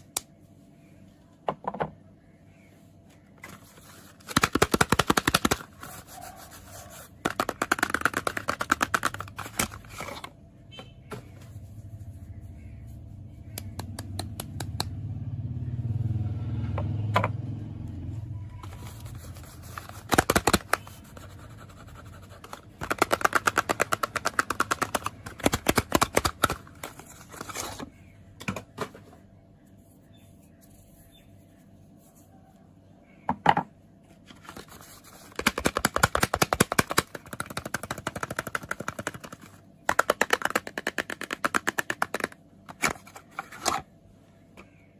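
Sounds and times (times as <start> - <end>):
packaging rubbing: 3.4 - 10.3, 18.6 - 27.9, 34.4 - 43.7
fingernails tapping on packaging: 7.2 - 9.8, 18.6 - 27.0, 35.3 - 42.4.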